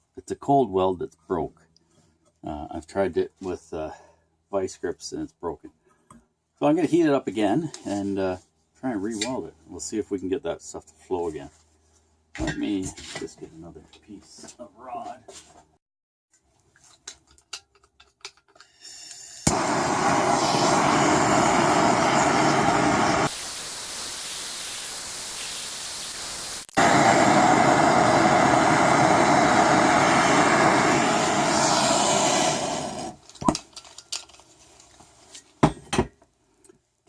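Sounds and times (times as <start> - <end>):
gas torch hissing: 18.9 - 33.2.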